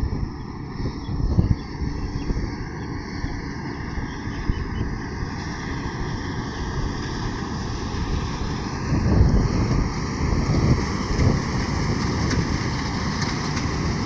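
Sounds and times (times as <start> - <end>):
combine harvester rumbling: 0.0 - 14.0.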